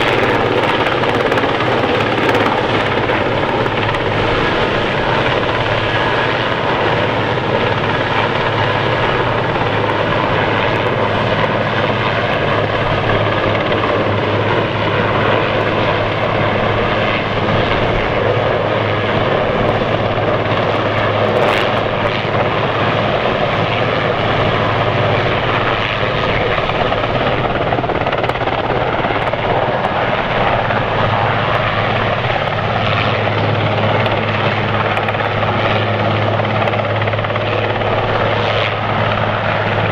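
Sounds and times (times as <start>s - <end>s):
loud engine drone: 0.0s - 39.9s.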